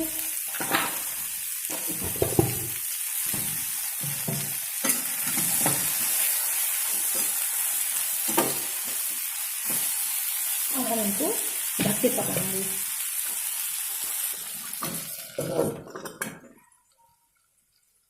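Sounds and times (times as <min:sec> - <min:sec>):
vegetables sizzling in hot oil: 0:00.0 - 0:15.8
spoon scraping a pan: 0:04.2 - 0:07.5.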